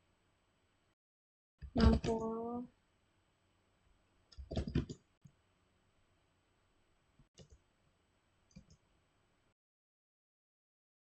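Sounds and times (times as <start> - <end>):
computer mouse clicking: 7.3 - 7.6, 8.5 - 8.8.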